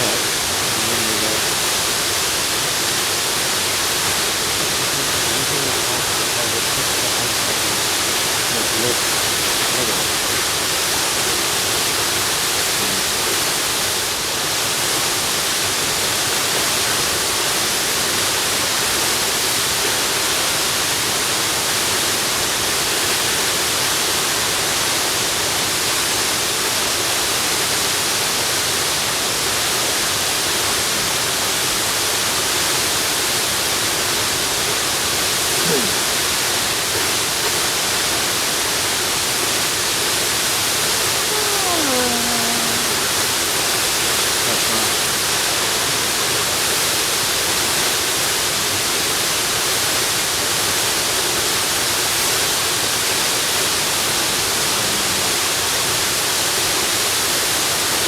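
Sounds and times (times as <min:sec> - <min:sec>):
waterfall rushing: 0:00.0 - 0:20.1.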